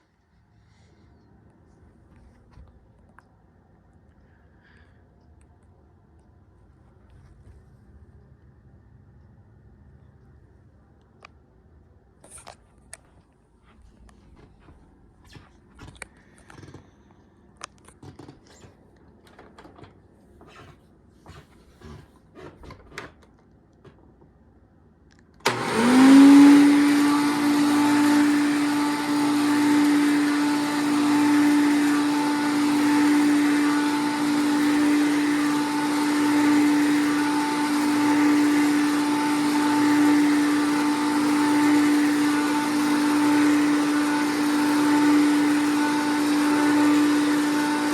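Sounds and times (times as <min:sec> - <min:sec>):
faint clicks and knocks: 0:12.2 - 0:25.4
vacuum cleaner motor whining: 0:25.4 - 0:47.9.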